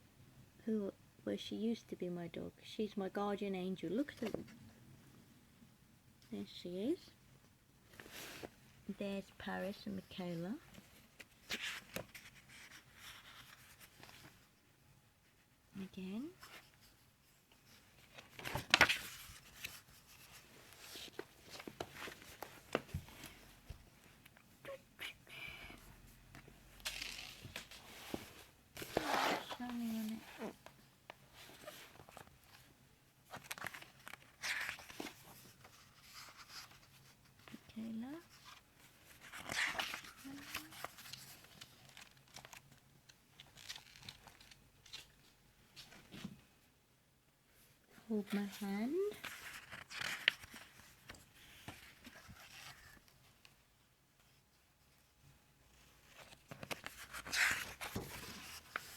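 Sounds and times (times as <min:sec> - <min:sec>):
book pages rustling: 0:04.1 - 0:04.6, 0:07.9 - 0:08.6, 0:10.2 - 0:14.5, 0:16.3 - 0:24.5, 0:26.2 - 0:46.4, 0:48.3 - 0:53.6, 0:55.7 - 0:58.9.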